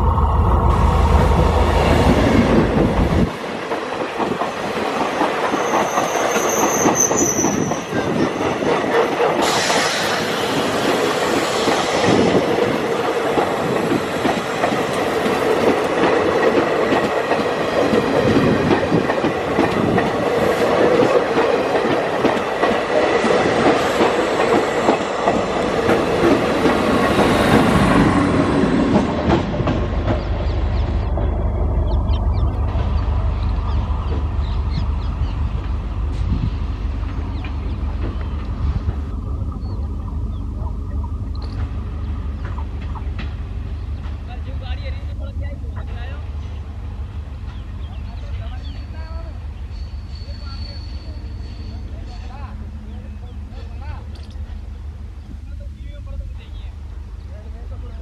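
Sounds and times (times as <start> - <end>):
heavy low rumble: 0.0 - 3.4, 27.6 - 44.1
train wheels clattering over rail joints: 2.5 - 30.4, 41.4 - 44.3
high wheel squeal: 5.5 - 8.4, 49.7 - 52.4.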